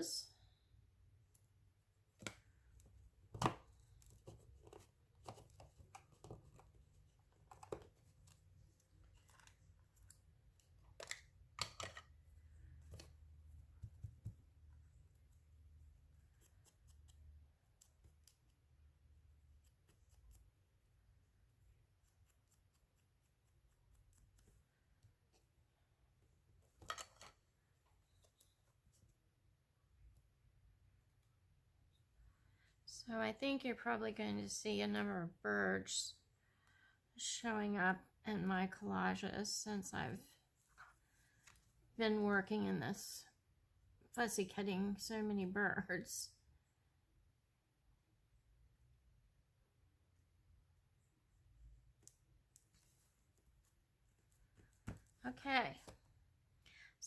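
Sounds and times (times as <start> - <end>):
scissors snipping paper: 16.2 - 18.6, 22.0 - 24.7.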